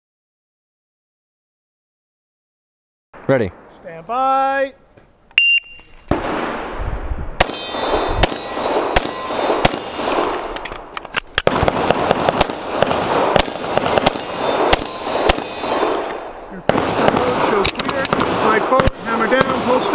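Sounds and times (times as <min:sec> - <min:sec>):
steel targets ringing: 0:07.4 - 0:10.2, 0:14.2 - 0:16.0, 0:18.9 - 0:19.9
pistol shots: 0:07.4 - 0:19.9.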